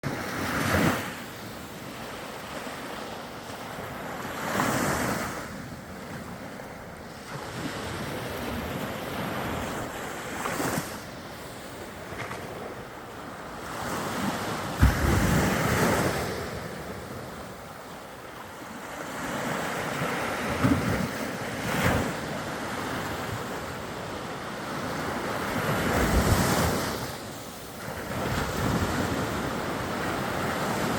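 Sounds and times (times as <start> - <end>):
waves washing onto beach: 0.0 - 30.9.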